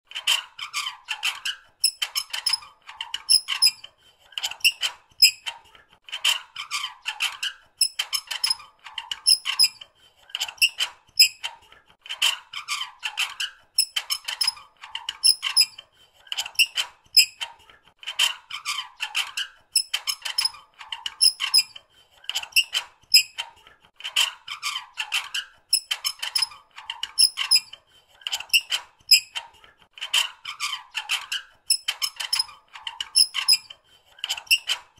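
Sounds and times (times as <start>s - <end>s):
metal squeaking: 0.2s - 3.8s, 6.8s - 9.8s, 12.6s - 15.8s, 19.4s - 21.8s, 25.4s - 27.8s, 30.6s - 33.7s.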